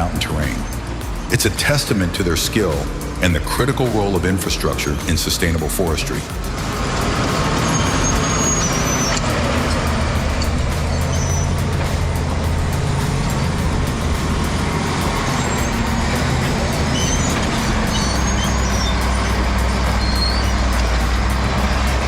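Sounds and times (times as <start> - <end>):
bulldozer diesel engine: 0.0 - 22.0
short high squeaks: 7.0 - 12.1, 16.7 - 22.0.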